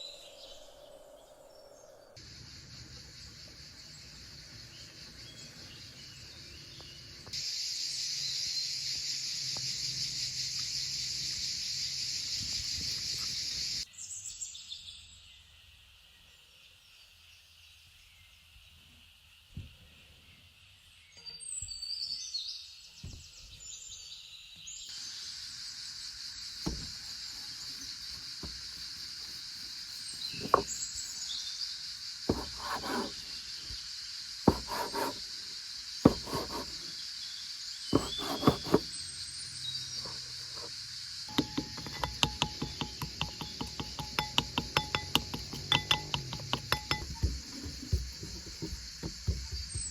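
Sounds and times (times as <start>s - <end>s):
insects buzzing: 0.0s - 13.9s, 24.9s - 49.9s
sharp knocks: 32.3s - 33.1s, 41.3s - 49.9s.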